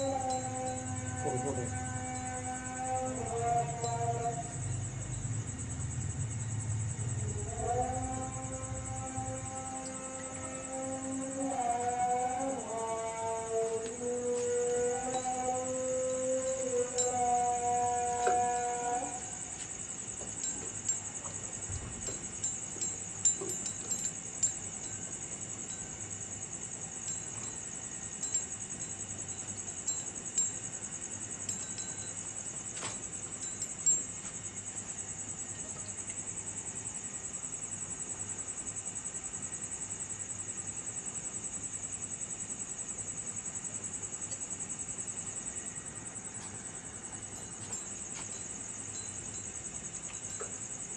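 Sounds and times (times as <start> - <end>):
insects trilling: 0.0 - 50.9.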